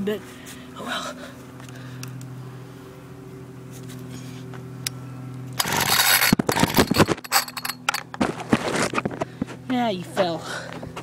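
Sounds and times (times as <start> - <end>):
low hum: 0.0 - 11.0
recoil pull-starter yank: 5.6 - 9.4.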